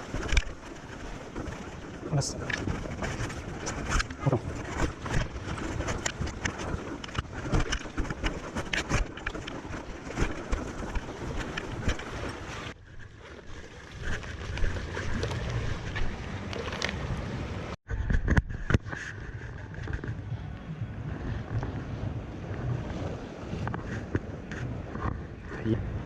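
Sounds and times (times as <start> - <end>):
sea surf: 0.0 - 17.8, 20.4 - 26.0
wind buffeting microphone: 0.0 - 26.0
small clicks and knocks: 0.2 - 0.6.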